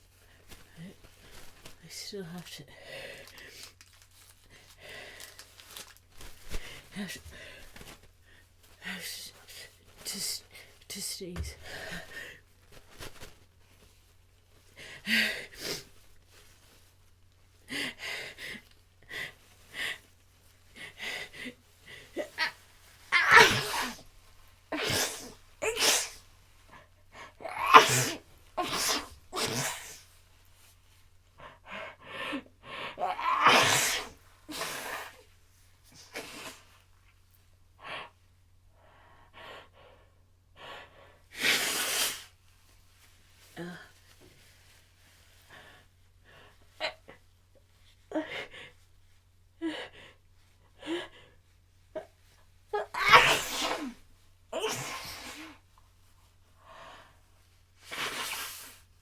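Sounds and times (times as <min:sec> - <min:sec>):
person sneezing: 0:22.2 - 0:24.1, 0:24.7 - 0:26.3, 0:27.4 - 0:30.1, 0:33.0 - 0:35.2, 0:52.8 - 0:54.0, 0:54.6 - 0:55.6.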